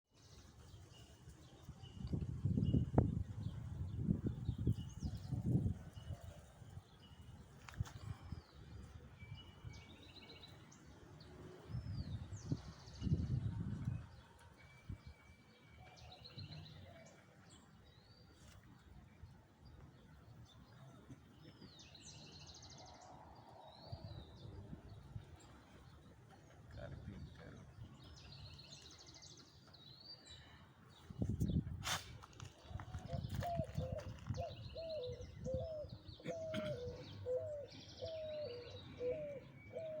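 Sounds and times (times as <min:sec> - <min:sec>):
birds chirping and trilling: 0:32.4 - 0:40.0
bird hooting: 0:33.4 - 0:40.0.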